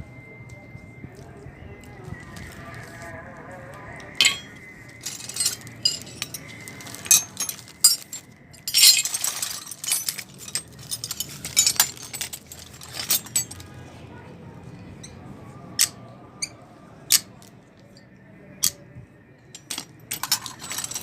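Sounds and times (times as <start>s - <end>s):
metal tools clinking: 4.2s - 13.8s, 19.6s - 21.0s.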